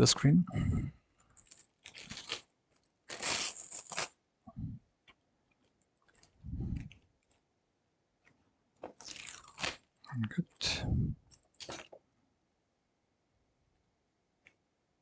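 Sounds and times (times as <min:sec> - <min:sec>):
tape tearing from roll: 0:01.4 - 0:04.2, 0:09.0 - 0:09.9, 0:11.6 - 0:11.9.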